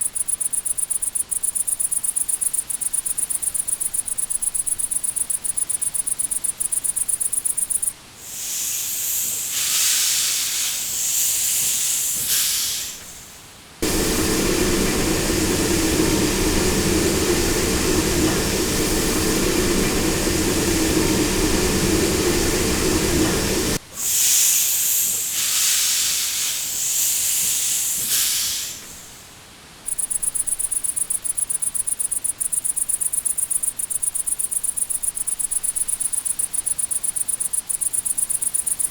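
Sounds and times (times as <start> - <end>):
crickets chirping: 0.0 - 8.0, 13.8 - 23.8, 29.9 - 38.9
steam locomotive hissing: 7.2 - 29.2
steam whistle: 13.8 - 24.8.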